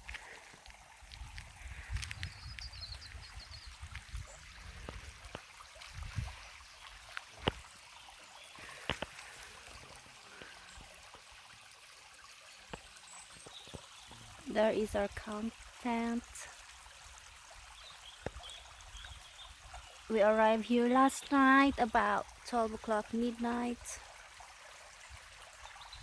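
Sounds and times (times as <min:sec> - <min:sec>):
small stream running: 0:00.0 - 0:26.0
wind on microphone: 0:01.0 - 0:06.5.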